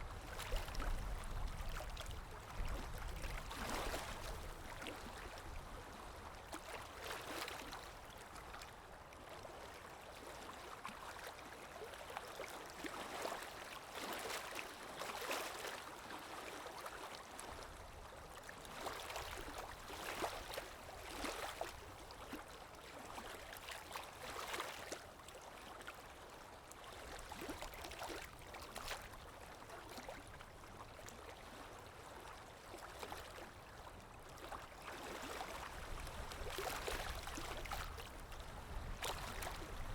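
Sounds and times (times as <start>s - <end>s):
sea waves lapping: 0.1s - 6.0s, 18.4s - 25.8s, 32.3s - 39.9s.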